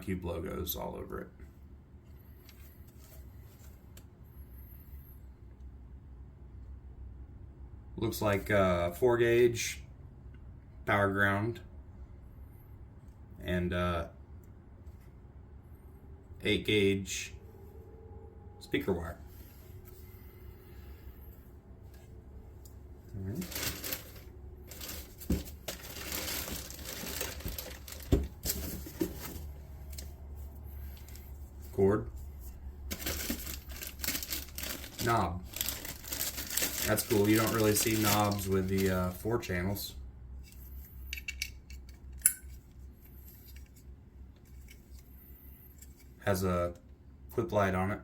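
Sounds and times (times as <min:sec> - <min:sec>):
faint low hum: 0:00.0 - 0:48.0
packaging crinkling: 0:23.3 - 0:30.1, 0:32.8 - 0:39.2.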